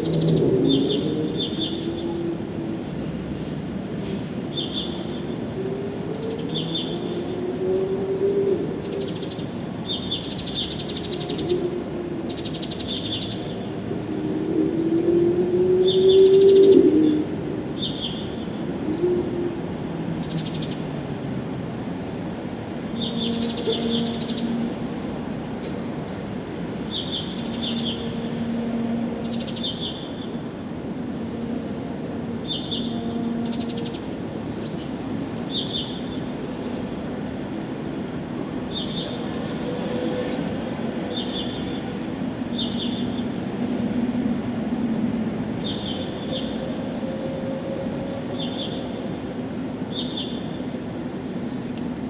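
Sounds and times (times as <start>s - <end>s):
songbirds chirping: 0.0s - 52.0s.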